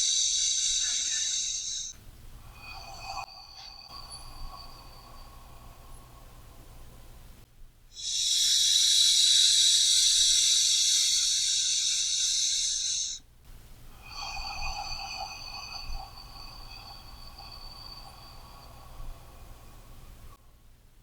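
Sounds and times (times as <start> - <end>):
whistly breath: 0.0 - 7.3, 8.0 - 13.3, 14.0 - 20.4
deep human breathing: 0.0 - 7.4, 8.0 - 20.4.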